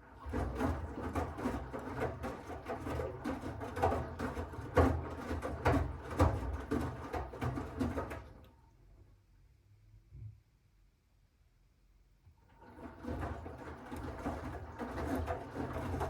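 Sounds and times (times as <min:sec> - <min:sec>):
wet laundry tumbling in drum: 0:00.1 - 0:08.5, 0:12.5 - 0:16.0.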